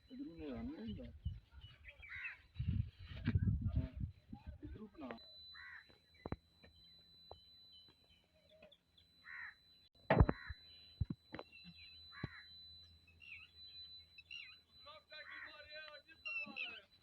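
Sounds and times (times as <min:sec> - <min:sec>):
bird calling: 0:00.0 - 0:02.6, 0:04.8 - 0:17.0
sharp knock: 0:10.1 - 0:10.4.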